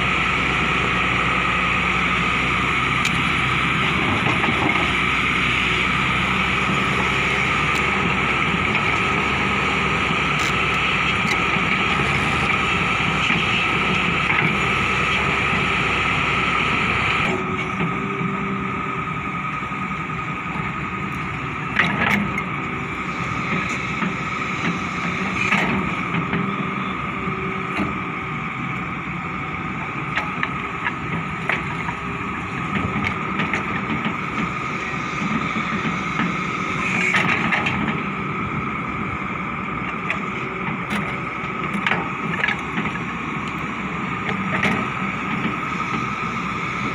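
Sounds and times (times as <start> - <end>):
excavator diesel engine whining: 0.0 - 46.9.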